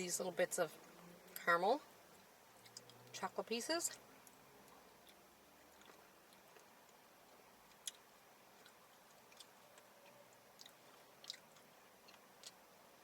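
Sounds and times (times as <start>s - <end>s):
mouth sounds eating ice cream: 3.9s - 13.0s.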